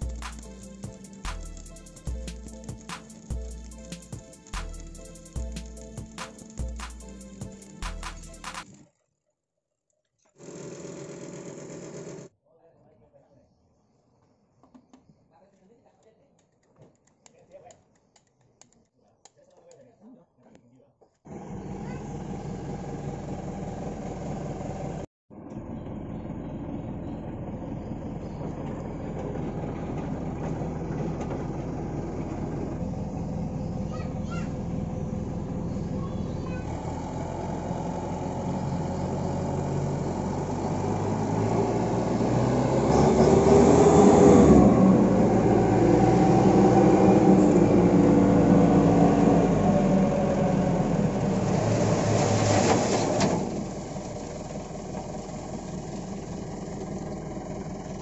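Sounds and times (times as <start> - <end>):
diesel truck engine running: 0.0 - 8.6, 21.3 - 58.0.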